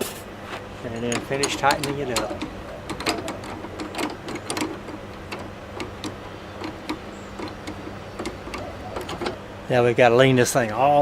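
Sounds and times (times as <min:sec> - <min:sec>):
hand tool clicking on bolt: 0:01.0 - 0:09.4.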